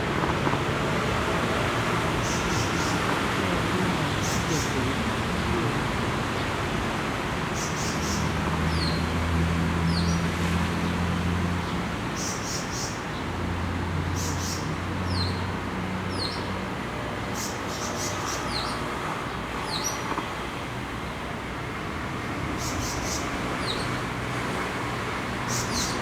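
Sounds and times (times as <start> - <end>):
low traffic hum: 0.0 - 26.0
birds chirping: 1.8 - 6.7, 25.4 - 26.0.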